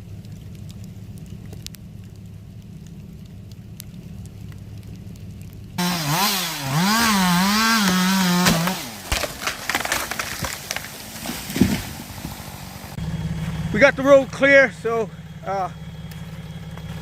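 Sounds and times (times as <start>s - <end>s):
low engine hum: 0.0s - 9.1s, 10.5s - 17.0s
wood cracking and knocking: 0.1s - 12.4s
chainsaw revving and cutting wood: 5.8s - 11.9s.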